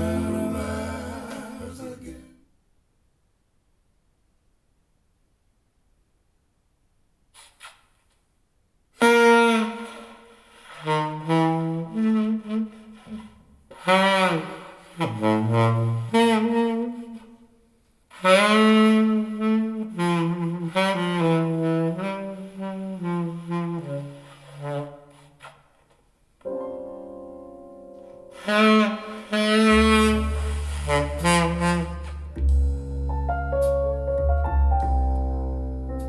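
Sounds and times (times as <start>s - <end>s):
held keyboard chords: 0.0s - 1.8s, 26.4s - 36.0s
saxophone melody: 0.0s - 1.8s, 9.0s - 17.5s, 18.1s - 25.5s, 26.5s - 36.0s
deep bass note: 29.7s - 36.0s.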